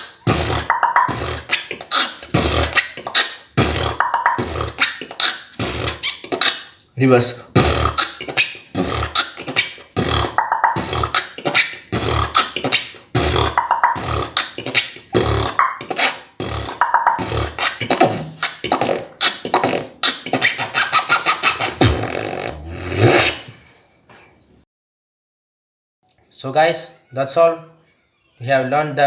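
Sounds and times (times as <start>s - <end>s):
person beatboxing: 0.0s - 6.8s, 7.4s - 23.6s.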